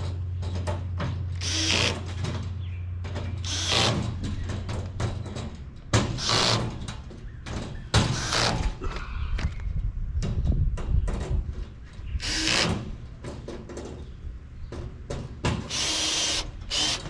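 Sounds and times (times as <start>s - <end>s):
power drill driving bolts: 1.4s - 2.3s, 3.4s - 4.8s, 6.0s - 7.0s, 7.9s - 8.8s, 12.2s - 13.0s, 15.5s - 17.0s.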